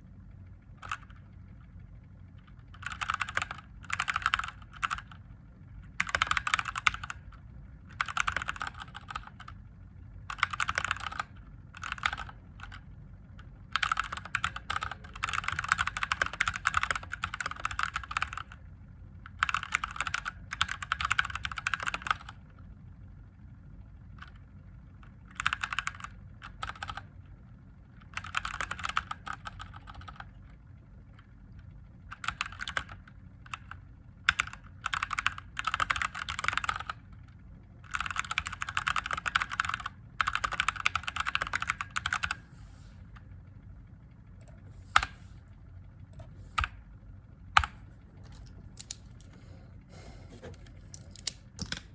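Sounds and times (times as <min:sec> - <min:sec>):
mechanical keyboard typing: 0:00.8 - 0:01.3, 0:02.4 - 0:05.2, 0:06.0 - 0:07.3, 0:07.9 - 0:09.6, 0:10.3 - 0:12.8, 0:13.7 - 0:18.6, 0:19.3 - 0:22.4, 0:25.3 - 0:27.1, 0:28.1 - 0:30.3, 0:32.1 - 0:37.0, 0:37.9 - 0:42.4, 0:47.6 - 0:49.3, 0:50.4 - 0:51.9.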